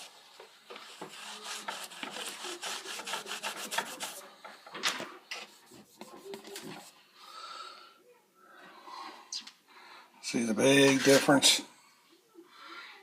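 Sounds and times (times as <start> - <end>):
sponge scrubbing in rasping strokes: 0.7 - 4.3.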